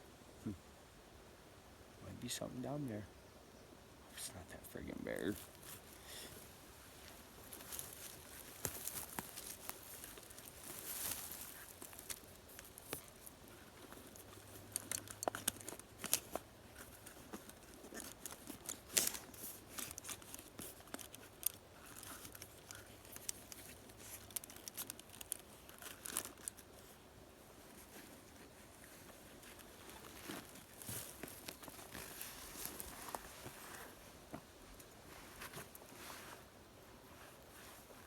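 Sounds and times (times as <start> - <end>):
footsteps through dry leaves: 7.0 - 12.4
twigs snapping: 7.5 - 26.6.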